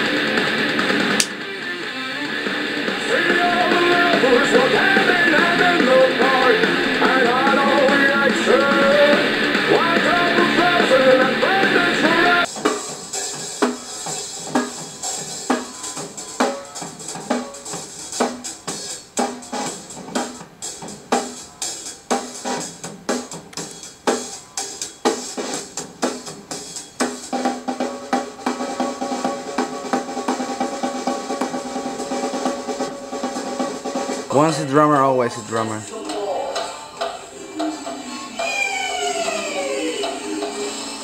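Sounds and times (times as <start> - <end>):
drum kit beat: 0.0 - 41.0
rock song playing: 0.0 - 41.0
held chords: 26.6 - 41.0.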